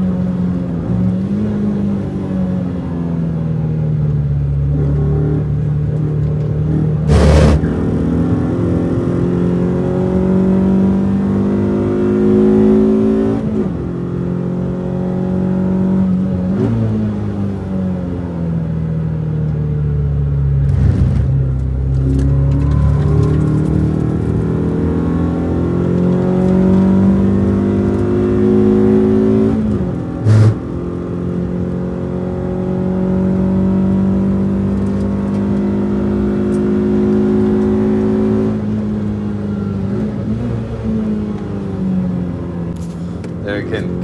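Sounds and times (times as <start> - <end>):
car engine revving: 0.0 - 19.0, 20.0 - 44.0.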